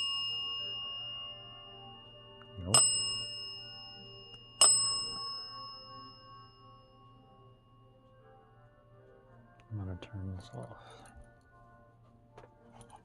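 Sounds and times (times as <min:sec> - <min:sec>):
small metal bell ringing: 0:00.0 - 0:08.0.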